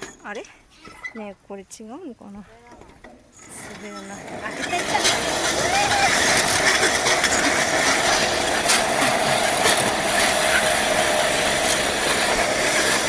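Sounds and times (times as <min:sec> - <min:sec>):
metal rollers rattling: 0:02.7 - 0:13.0.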